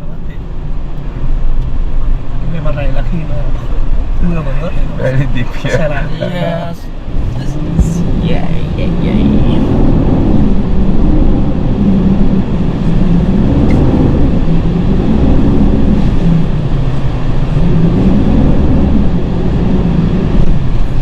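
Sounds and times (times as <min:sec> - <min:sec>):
truck engine revving under load: 0:08.9 - 0:21.0.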